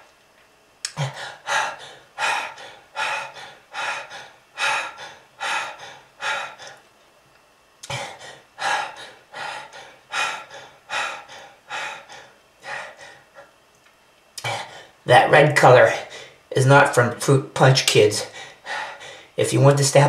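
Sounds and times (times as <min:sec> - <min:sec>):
person coughing hard: 0:00.9 - 0:01.8, 0:14.4 - 0:14.8.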